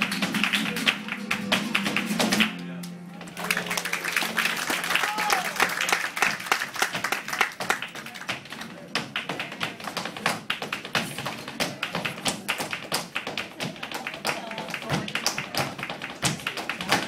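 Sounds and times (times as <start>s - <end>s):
faint music: 0.0s - 5.2s
rapid shoe taps: 6.8s - 17.0s.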